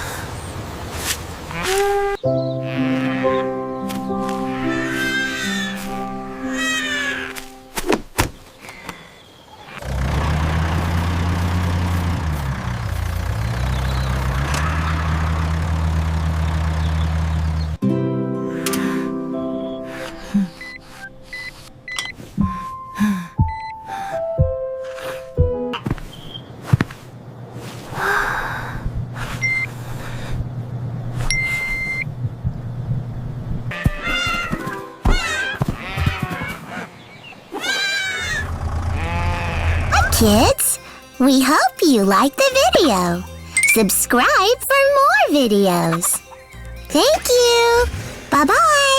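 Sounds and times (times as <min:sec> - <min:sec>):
tractor engine running: 0:09.8 - 0:17.8, 0:38.3 - 0:48.9
cartoon music: 0:39.9 - 0:48.9
short high electronic beeps: 0:43.6 - 0:44.0.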